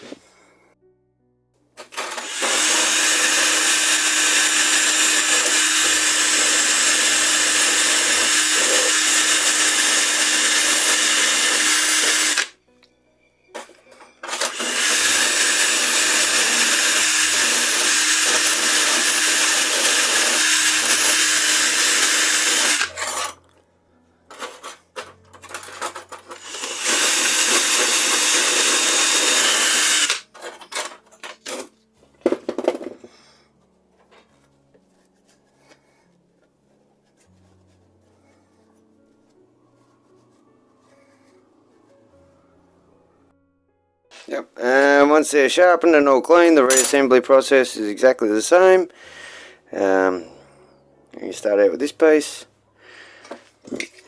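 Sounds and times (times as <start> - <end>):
electric drill motor whine: 1.9 - 12.5, 14.2 - 23.3, 26.4 - 30.3.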